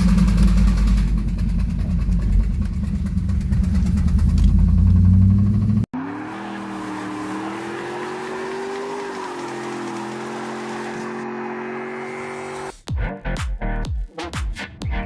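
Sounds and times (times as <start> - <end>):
engine rod knocking: 0.0 - 5.5
smooth engine hum with rising tone: 0.0 - 12.7.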